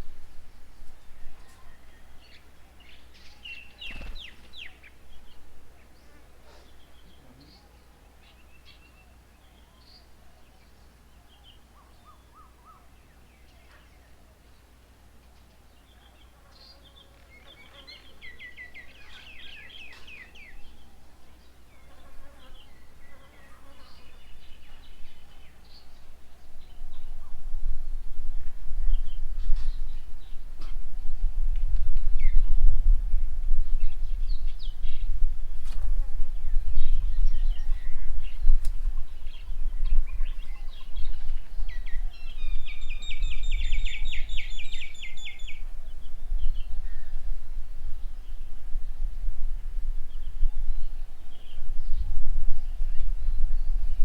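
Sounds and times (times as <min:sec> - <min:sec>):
birds chirping: 0:00.0 - 0:14.8, 0:15.4 - 0:28.0, 0:33.5 - 0:49.1.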